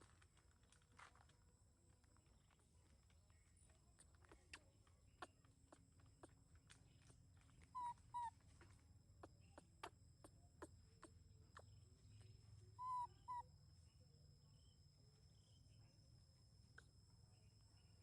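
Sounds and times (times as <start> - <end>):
baby monkey squeaky calls: 7.7 - 8.4, 12.8 - 13.4.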